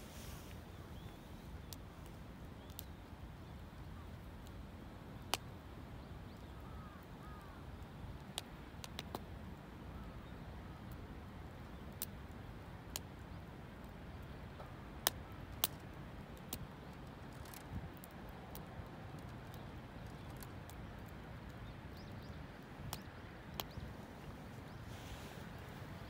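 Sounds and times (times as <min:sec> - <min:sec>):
campfire crackling and popping: 0:00.1 - 0:03.1, 0:04.1 - 0:05.7, 0:06.3 - 0:09.6, 0:10.8 - 0:24.4
faint bird calls: 0:06.3 - 0:07.8, 0:21.6 - 0:26.0.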